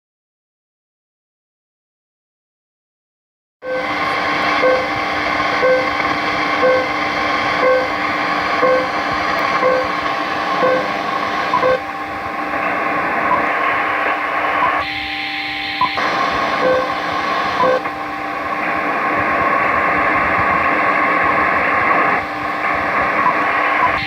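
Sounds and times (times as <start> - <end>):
short beeps: 3.6 - 5.0, 5.6 - 6.0, 6.6 - 7.0, 7.6 - 8.0, 8.6 - 9.0, 9.6 - 10.0, 10.6 - 11.9, 14.6 - 17.9
steady radio tones: 3.6 - 24.0
radio static: 3.7 - 24.0.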